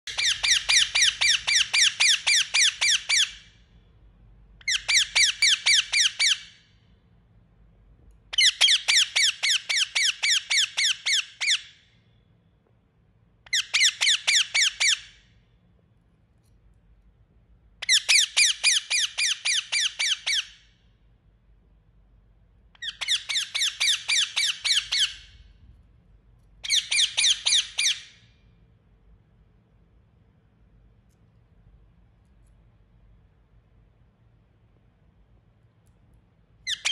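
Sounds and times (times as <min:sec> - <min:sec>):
parakeet calling: 0:00.0 - 0:03.6, 0:04.6 - 0:06.7, 0:08.3 - 0:11.8, 0:13.4 - 0:15.3, 0:17.8 - 0:20.8, 0:22.7 - 0:25.5, 0:26.6 - 0:28.3, 0:36.6 - 0:36.9.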